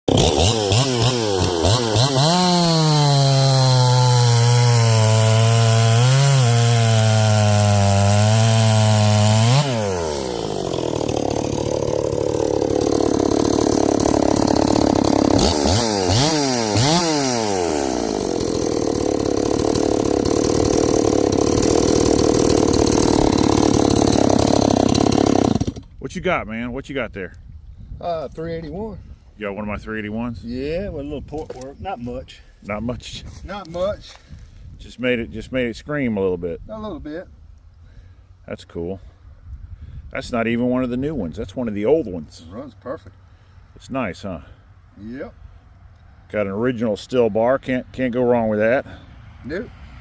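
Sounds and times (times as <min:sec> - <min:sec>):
chainsaw revving: 0:00.1 - 0:26.0.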